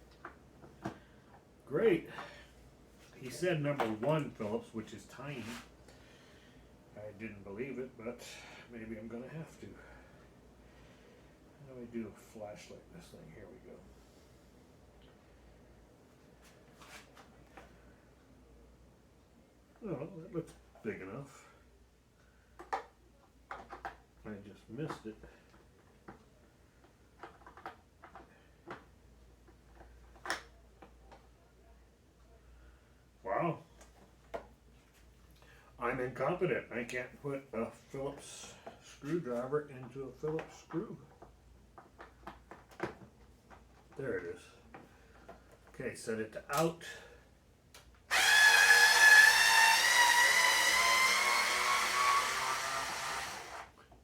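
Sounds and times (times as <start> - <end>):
power screwdriver motor whine: 48.1 - 53.7.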